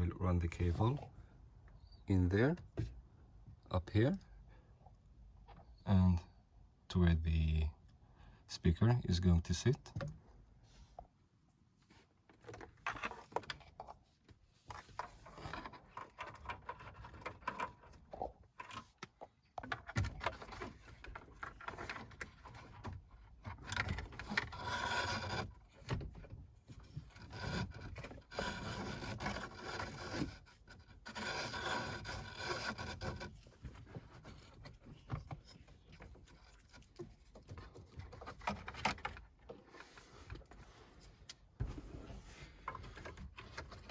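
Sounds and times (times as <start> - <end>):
cable scraping plastic trim: 14.7 - 40.6.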